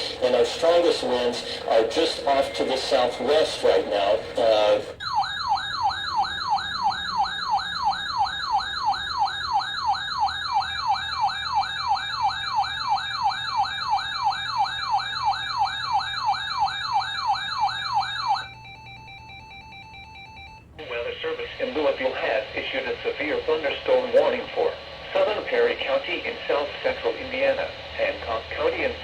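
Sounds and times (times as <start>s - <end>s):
faint steady tone: 5.8s - 28.2s.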